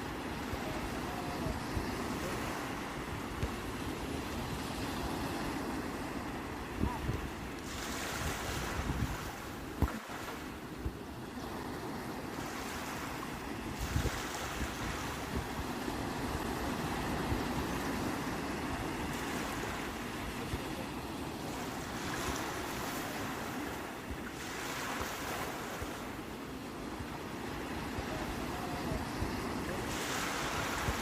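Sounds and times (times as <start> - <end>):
wind rumbling on microphone: 0.0 - 10.0, 10.8 - 20.9, 27.0 - 31.0
sea waves breaking on shore: 0.0 - 31.0.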